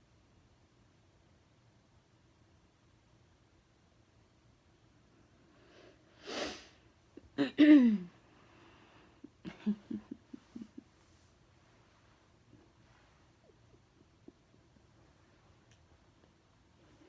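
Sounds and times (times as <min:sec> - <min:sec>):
noisy in-breath: 0:05.4 - 0:06.8, 0:08.2 - 0:09.3
person sneezing: 0:06.2 - 0:08.1.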